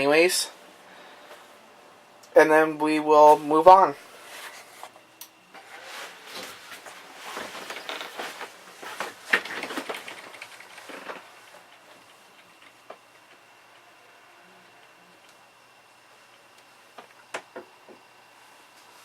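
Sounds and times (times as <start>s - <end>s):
handling clicks and rustles: 6.4s - 13.3s.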